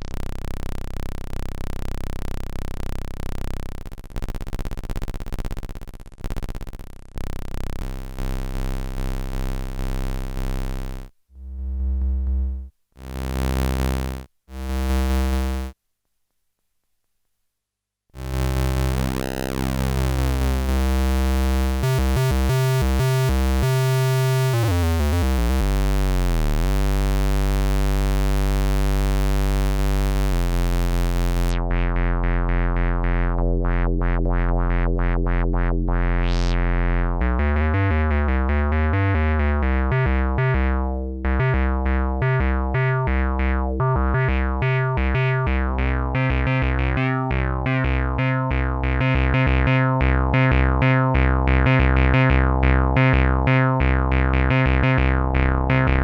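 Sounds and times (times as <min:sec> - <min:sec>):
synthesizer low sustained notes: 0:07.8 - 0:15.6, 0:18.2 - 0:56.0
resonant filter sweep: 0:11.3 - 0:12.7, 0:30.0 - 0:38.5
fast short synthesizer notes: 0:11.4 - 0:12.7.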